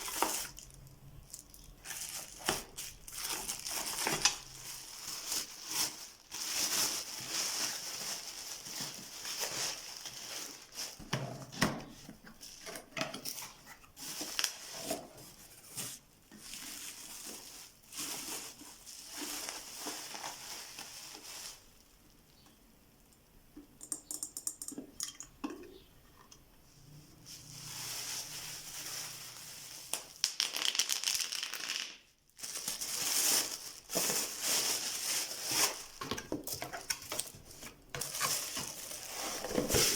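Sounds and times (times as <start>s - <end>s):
plastic packaging crinkling: 0.0s - 22.2s, 27.4s - 39.9s
cardboard being handled: 33.9s - 39.9s.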